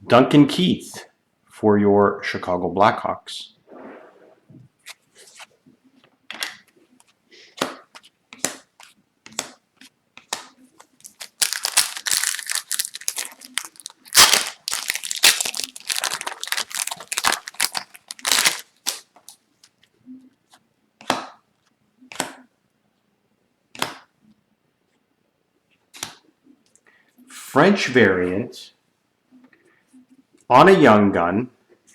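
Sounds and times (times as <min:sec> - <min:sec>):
cards clicking and snapping: 0:10.2 - 0:19.3
foil wrapper crinkling and tearing: 0:10.8 - 0:19.4.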